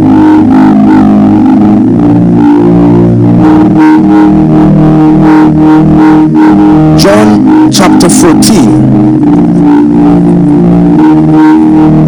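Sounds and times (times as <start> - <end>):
sustained guitar chords: 0.0 - 12.0.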